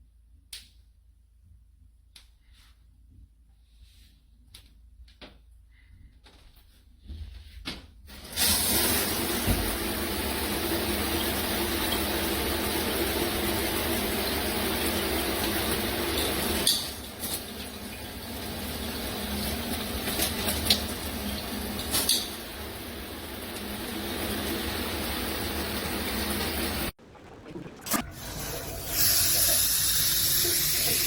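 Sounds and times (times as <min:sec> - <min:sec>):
shower spraying water: 0:08.1 - 0:31.0.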